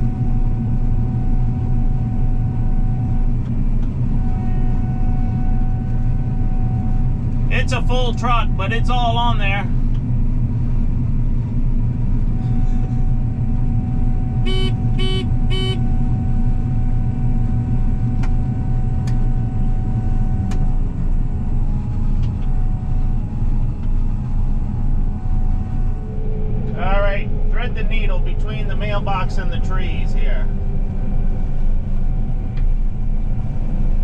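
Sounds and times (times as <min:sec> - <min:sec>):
combine harvester engine running: 0:00.0 - 0:34.0
short beeps: 0:14.5 - 0:15.8.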